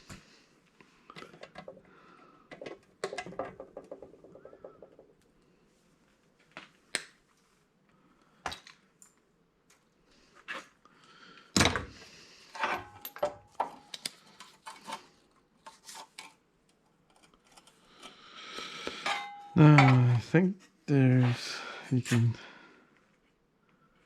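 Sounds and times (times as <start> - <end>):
sheet metal clinks and knocks: 19.1 - 20.1.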